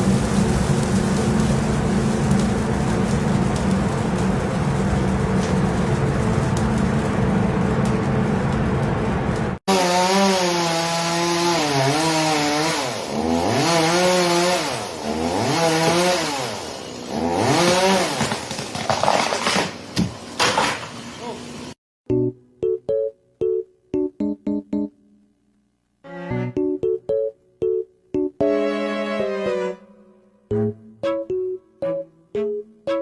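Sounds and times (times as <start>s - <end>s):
steady rushing noise: 0.0s - 9.6s
chainsaw revving: 9.7s - 18.5s.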